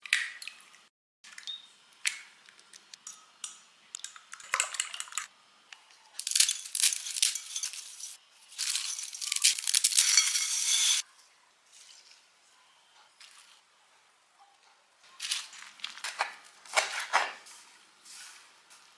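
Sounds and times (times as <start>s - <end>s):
dishes and utensils clinking: 6.4s - 11.0s
hissing scraping noise: 8.8s - 11.0s.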